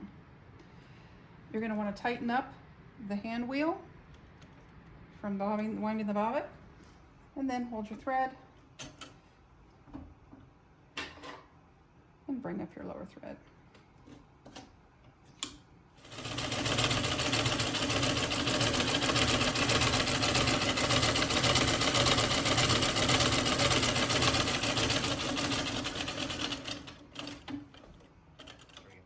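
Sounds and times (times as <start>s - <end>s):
sewing machine clatter: 16.0s - 29.0s.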